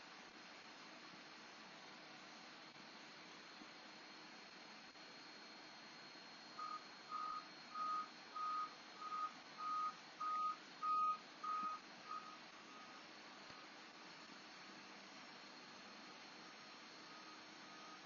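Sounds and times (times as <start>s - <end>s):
faint steady hiss: 0.0s - 18.0s
electronic beeps: 6.6s - 13.0s.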